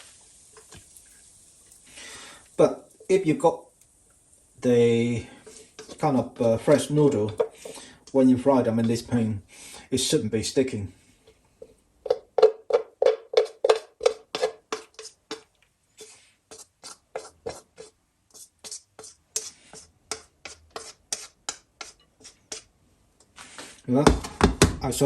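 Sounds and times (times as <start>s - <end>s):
utensil scraping a wok: 5.0s - 8.0s, 12.4s - 22.7s.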